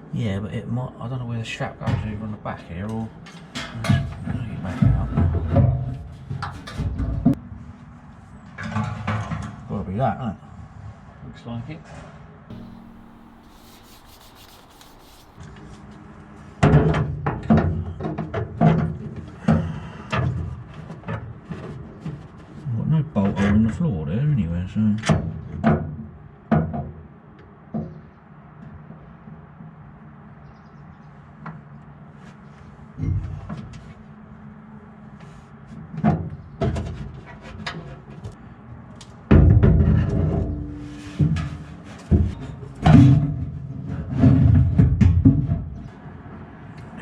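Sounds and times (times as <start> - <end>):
rough rubbing and scraping: 12.5 - 15.4.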